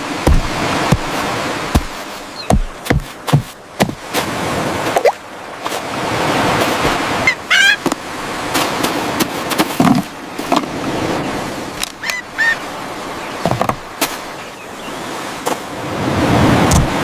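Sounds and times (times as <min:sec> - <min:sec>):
rushing surf: 0:00.0 - 0:17.0.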